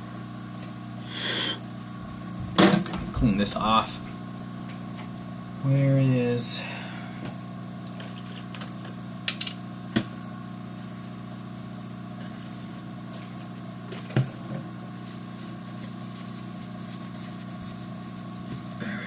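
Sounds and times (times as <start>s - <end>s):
low mechanical hum: 0.0s - 19.0s.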